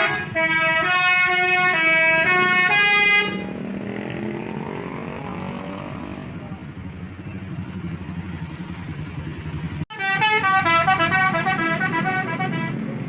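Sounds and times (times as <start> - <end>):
bus horn playing multi-note tune: 0.0 - 3.7, 9.9 - 13.0
low vehicle engine rumble: 0.3 - 13.0.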